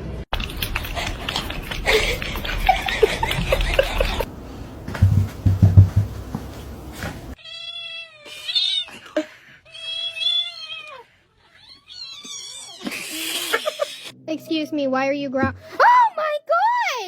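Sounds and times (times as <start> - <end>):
loud low thumping: 4.8 - 6.9.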